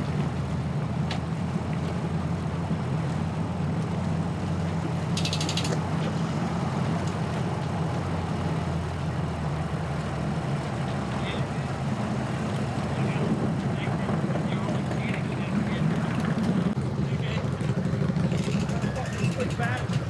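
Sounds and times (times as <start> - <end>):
engine droning: 0.0 - 20.0
rapid clicks: 5.1 - 5.8, 18.2 - 20.0.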